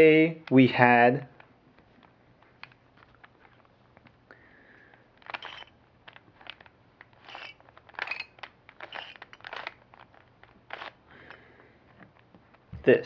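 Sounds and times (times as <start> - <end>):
puzzle cube clicking rattles: 4.8 - 12.7.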